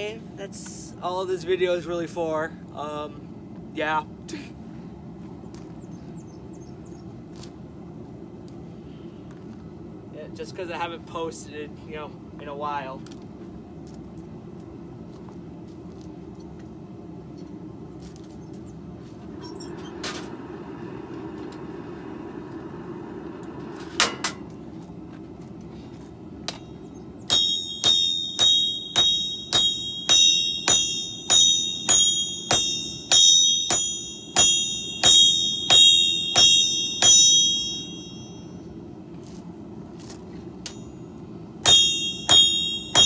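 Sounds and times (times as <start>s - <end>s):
low hum: 13.5s - 43.0s
hammer ringing on anvil: 26.5s - 38.7s, 40.7s - 43.0s.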